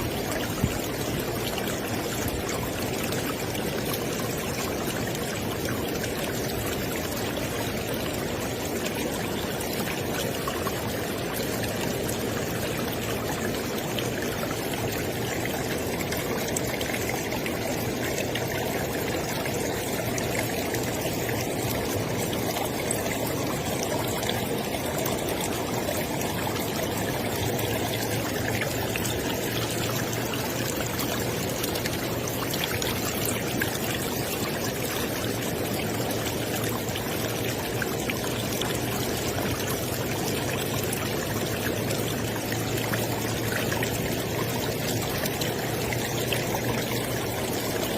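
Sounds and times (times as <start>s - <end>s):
river water flowing over rocks: 0.0s - 47.9s.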